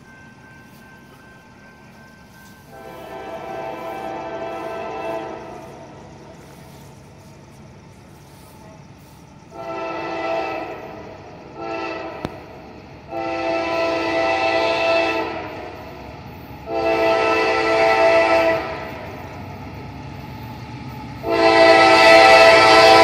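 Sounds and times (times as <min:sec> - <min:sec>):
low rumble of train: 0:00.0 - 0:23.0
locomotive air horn blasts: 0:02.7 - 0:06.9, 0:09.5 - 0:11.0, 0:11.6 - 0:12.5, 0:13.1 - 0:15.8, 0:16.6 - 0:19.1, 0:21.2 - 0:23.0.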